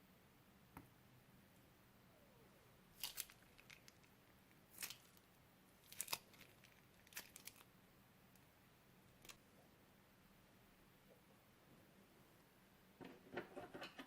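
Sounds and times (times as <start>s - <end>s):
plastic bags crinkling: 3.0s - 4.1s, 4.7s - 7.7s.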